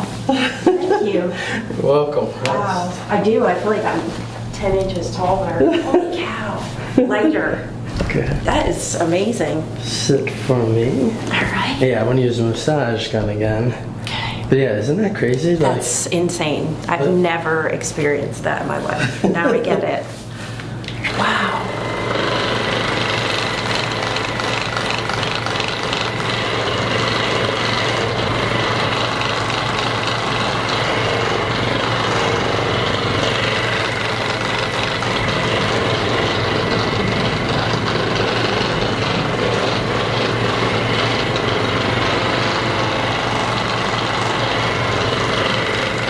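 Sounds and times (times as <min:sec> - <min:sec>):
massage gun vibrating buzz: 0:20.9 - 0:46.0.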